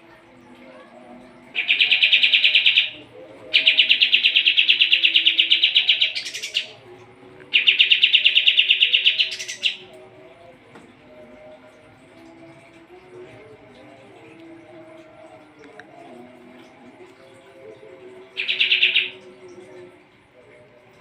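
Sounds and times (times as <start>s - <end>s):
bird singing buzzy trills: 1.5s - 6.9s, 7.5s - 10.1s, 17.4s - 19.6s.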